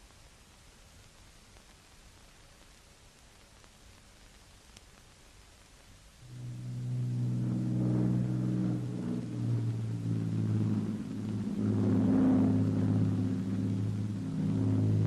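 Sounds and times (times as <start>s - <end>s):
aircraft engines droning: 6.2s - 15.0s.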